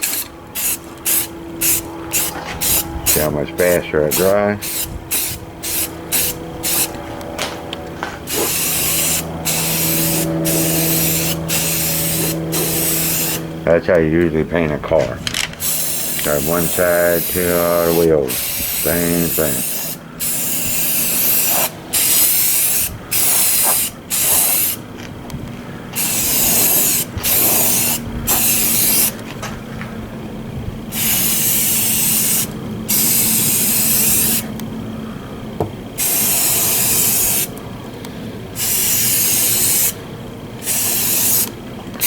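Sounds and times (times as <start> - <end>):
spray can hissing: 0.0 - 7.0, 8.3 - 13.4, 15.6 - 24.8, 26.0 - 29.2, 30.9 - 34.5, 36.0 - 37.6, 38.6 - 40.0, 40.6 - 41.6
steady low hum: 0.0 - 42.0.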